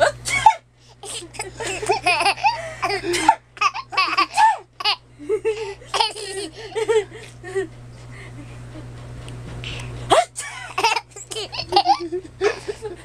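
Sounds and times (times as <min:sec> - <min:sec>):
baby laughing: 0:01.0 - 0:05.0, 0:05.6 - 0:07.0, 0:10.7 - 0:12.8.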